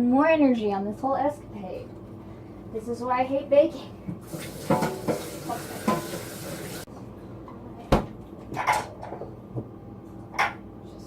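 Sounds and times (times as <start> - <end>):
kitchenware clattering: 4.2 - 6.9, 8.5 - 9.3
tap water running into sink: 4.2 - 6.9.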